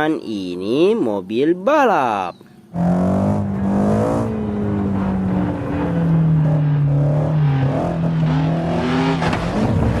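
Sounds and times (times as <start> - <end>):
race car engine revving: 2.7 - 10.0.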